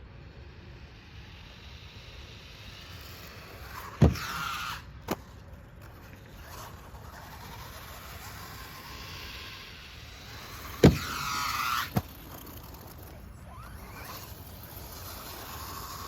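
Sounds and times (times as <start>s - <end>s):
rc truck landing thump: 3.7s - 6.7s, 10.5s - 13.7s
electric motor whining: 6.4s - 16.0s.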